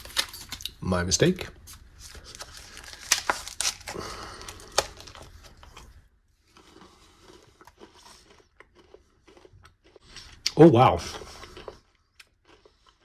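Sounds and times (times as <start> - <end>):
wrapper crinkling and crackling: 0.0 - 0.8, 1.6 - 6.0.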